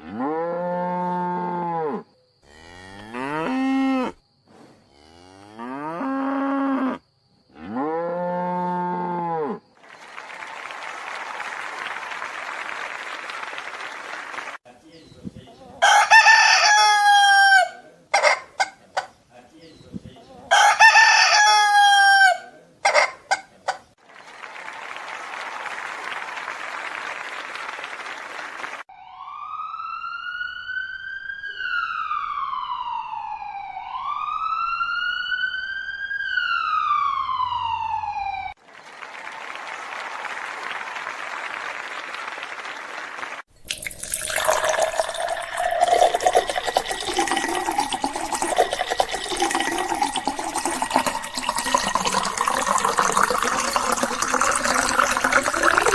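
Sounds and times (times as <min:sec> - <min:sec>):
rooster crowing: 0:15.8 - 0:18.4, 0:20.5 - 0:23.2
siren wailing: 0:28.9 - 0:38.5.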